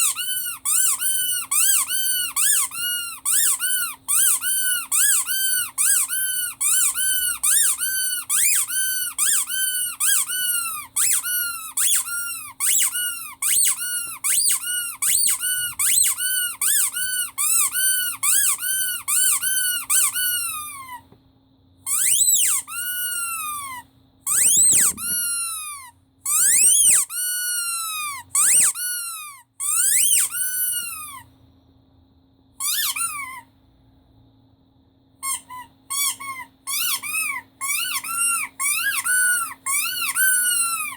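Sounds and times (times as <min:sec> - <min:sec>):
rubber squeaky toy squeaking: 0:00.0 - 0:21.1, 0:21.8 - 0:31.3, 0:32.6 - 0:33.5, 0:35.2 - 0:40.9
faint steady hum: 0:00.0 - 0:40.9.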